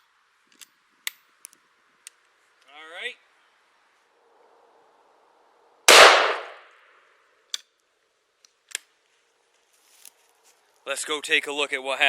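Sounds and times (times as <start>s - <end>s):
shotgun blast: 5.9s - 6.7s.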